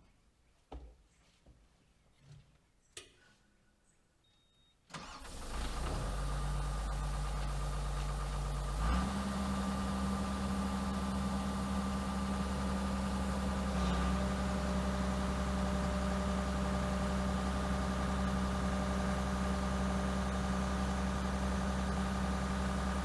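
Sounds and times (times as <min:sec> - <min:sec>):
excavator diesel engine running: 0:05.0 - 0:23.0.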